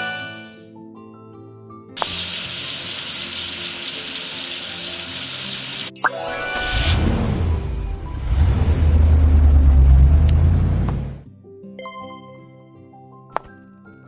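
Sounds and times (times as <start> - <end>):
soft music: 0.0 - 9.0, 11.3 - 14.0
loud steady hiss: 2.0 - 5.9.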